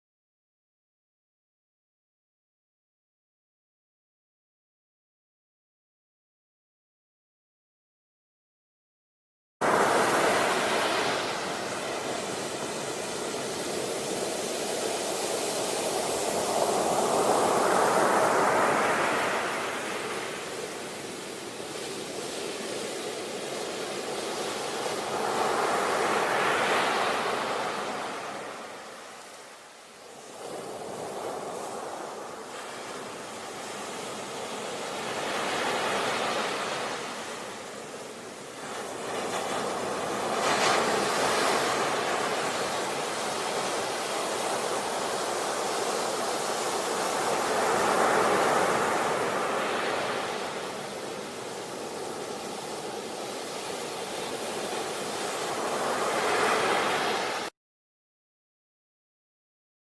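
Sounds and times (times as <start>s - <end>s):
waves rushing: 9.6s - 57.5s.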